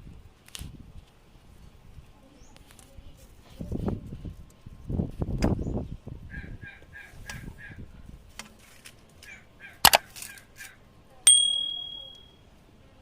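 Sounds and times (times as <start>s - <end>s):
metal vessel struck and ringing: 11.3s - 12.4s.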